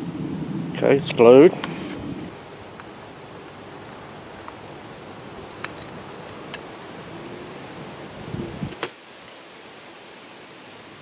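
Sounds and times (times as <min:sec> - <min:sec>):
steady background hiss: 0:00.0 - 0:11.0
glass pieces clicking: 0:03.7 - 0:04.0, 0:05.5 - 0:06.6.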